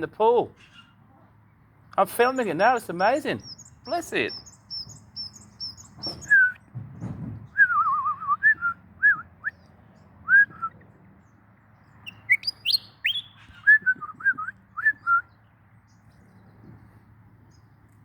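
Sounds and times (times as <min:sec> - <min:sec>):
bird singing whistled notes: 0:03.4 - 0:06.7, 0:07.5 - 0:10.8, 0:12.0 - 0:15.5.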